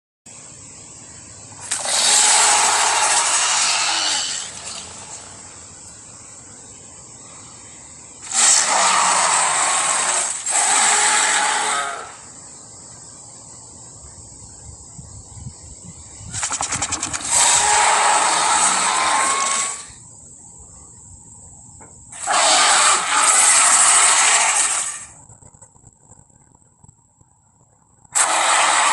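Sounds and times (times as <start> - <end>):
steady high hiss: 0.3 - 28.9
fast pulsing rattle: 0.5 - 28.9
creature roaring: 1.7 - 4.8, 8.3 - 12.2, 17.2 - 19.9, 28.2 - 28.9.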